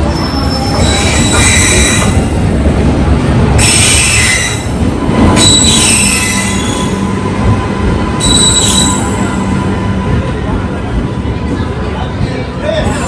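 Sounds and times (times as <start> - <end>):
train wheels squealing: 0.0 - 2.3, 3.6 - 7.1, 8.2 - 9.6
heavy train rumble: 0.0 - 13.0.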